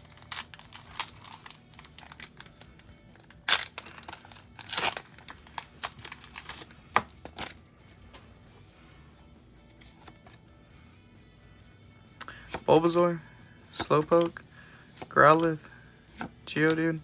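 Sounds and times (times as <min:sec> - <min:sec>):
foil wrapper crinkling and tearing: 0:00.0 - 0:07.6.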